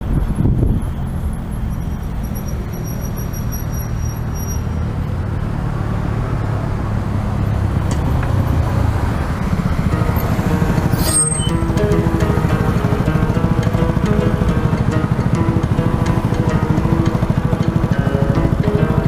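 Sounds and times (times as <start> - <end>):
wind rumbling on microphone: 0.0 - 1.4
road and traffic noise: 0.0 - 19.0.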